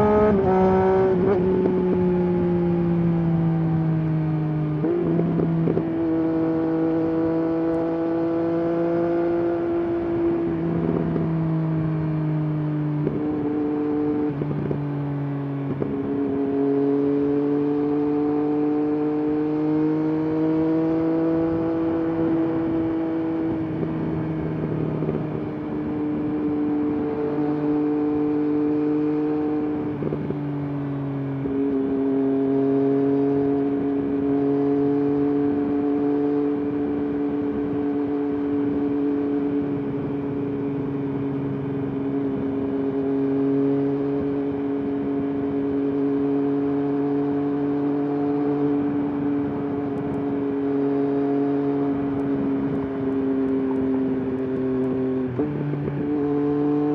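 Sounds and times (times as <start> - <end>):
motorcycle engine and exhaust: 0.0 - 56.9
wind buffeting microphone: 29.6 - 30.6, 35.4 - 42.8.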